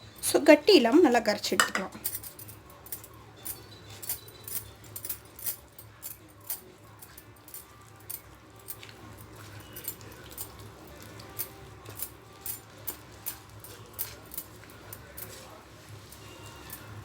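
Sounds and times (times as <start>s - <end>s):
spoon stirring batter in bowl: 3.6s - 17.0s.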